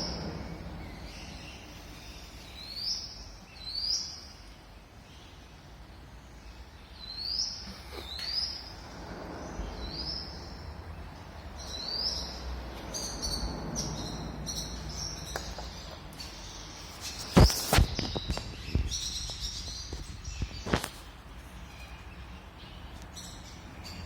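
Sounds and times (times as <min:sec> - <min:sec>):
warbler calling: 0:00.0 - 0:05.6, 0:06.2 - 0:24.0
low rumble: 0:08.6 - 0:15.0.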